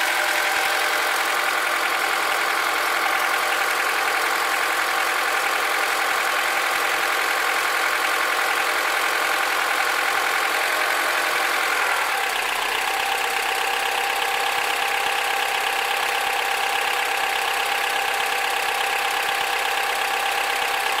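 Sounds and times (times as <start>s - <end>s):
car engine idling: 0.0s - 21.0s.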